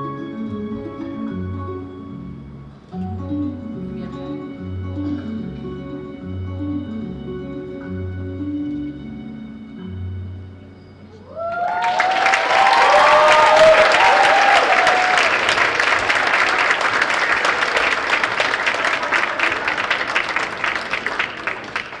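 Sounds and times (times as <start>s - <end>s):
high whoops and cheers: 11.2s - 16.8s
audience applauding: 11.3s - 22.0s.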